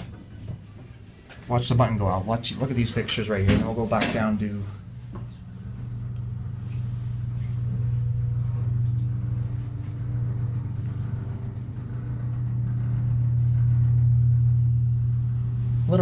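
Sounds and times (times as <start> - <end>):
elevator low hum: 0.0 - 16.0
elevator car rattling: 7.3 - 16.0.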